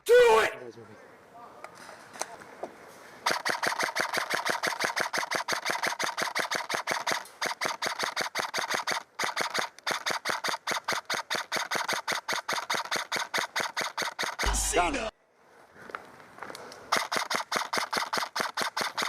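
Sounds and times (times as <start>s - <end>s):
airsoft gun firing full auto: 3.2s - 14.5s, 16.9s - 19.0s.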